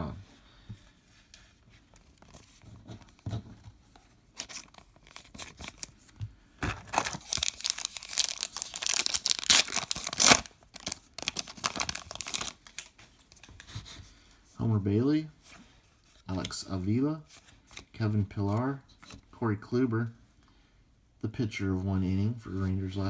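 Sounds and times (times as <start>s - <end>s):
wrapper tearing and crinkling: 6.6s - 13.5s.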